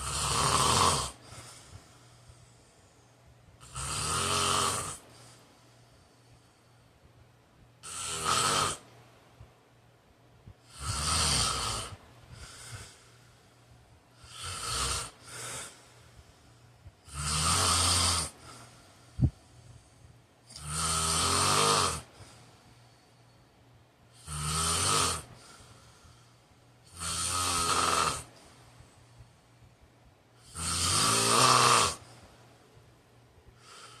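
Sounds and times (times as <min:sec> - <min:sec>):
man snoring loudly: 0:00.0 - 0:01.4, 0:03.6 - 0:05.1, 0:07.8 - 0:08.8, 0:10.7 - 0:12.9, 0:14.2 - 0:15.8, 0:17.0 - 0:18.5, 0:20.5 - 0:22.1, 0:24.2 - 0:25.4, 0:26.9 - 0:28.3, 0:30.4 - 0:32.1
soft breath: 0:01.1 - 0:03.6, 0:05.0 - 0:07.8, 0:11.9 - 0:14.3, 0:15.1 - 0:17.0, 0:18.3 - 0:20.5, 0:22.1 - 0:24.1, 0:25.3 - 0:26.9, 0:28.3 - 0:30.4, 0:32.0 - 0:34.0.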